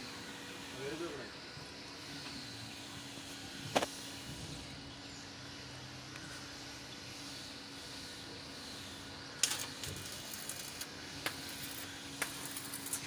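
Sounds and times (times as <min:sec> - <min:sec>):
arc welding crackling hiss: 0:00.0 - 0:13.0
welding arc pops: 0:09.4 - 0:13.0.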